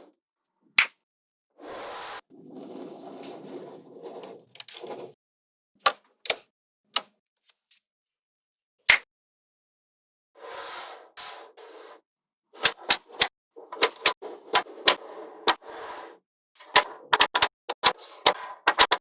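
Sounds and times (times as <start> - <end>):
magnetic balls rattling: 16.7 - 19.0
magnetic balls clicking: 16.8 - 19.0.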